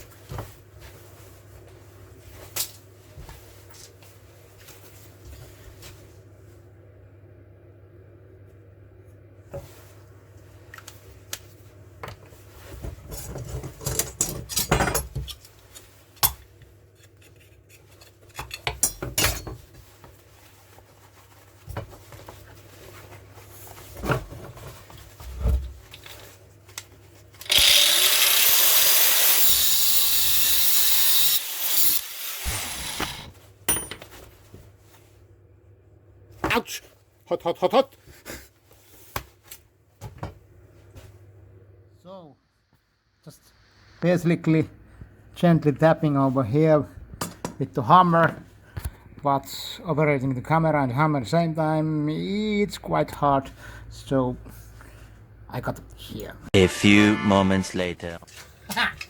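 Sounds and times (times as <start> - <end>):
angle grinder cutting metal: 27.4 - 33.3.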